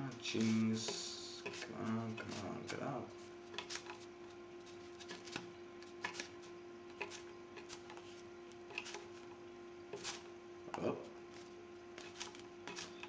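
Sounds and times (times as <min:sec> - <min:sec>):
steady low hum: 0:00.0 - 0:13.0
knife cutting cheese on board: 0:00.4 - 0:02.8, 0:08.7 - 0:09.1, 0:09.9 - 0:10.2, 0:12.0 - 0:13.0.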